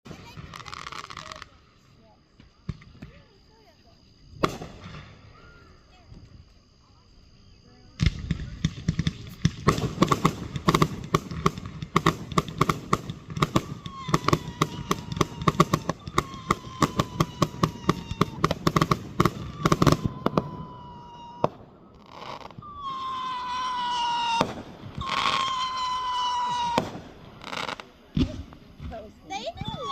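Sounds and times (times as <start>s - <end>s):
firecrackers crackling bangs: 4.4s - 5.3s, 8.0s - 29.9s
firework whistle falling in pitch: 13.4s - 27.7s.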